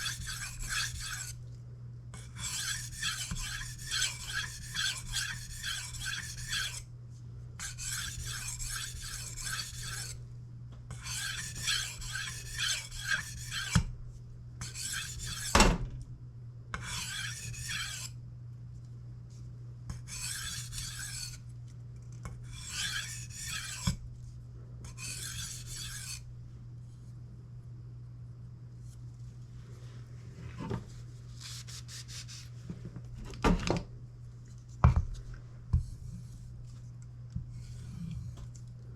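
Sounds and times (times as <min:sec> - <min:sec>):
knife rasping on sharpening stone: 0:00.0 - 0:01.3, 0:02.4 - 0:06.8, 0:07.6 - 0:10.2, 0:11.0 - 0:13.8, 0:14.6 - 0:15.5, 0:16.8 - 0:18.1, 0:20.1 - 0:21.4, 0:22.5 - 0:23.9, 0:24.9 - 0:26.2.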